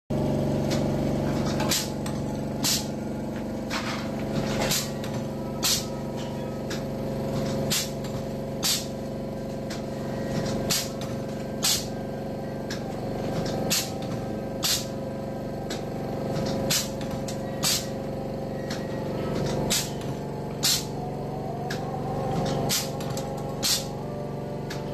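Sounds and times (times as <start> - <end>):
machine motor hum: 0.1 - 24.9
cutter snapping through wire: 22.4 - 23.8.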